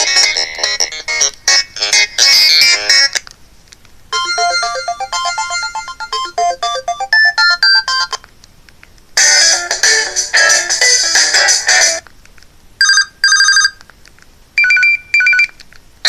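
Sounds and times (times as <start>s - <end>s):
phone ringtones: 4.1s - 8.2s, 12.8s - 13.8s, 14.6s - 15.6s.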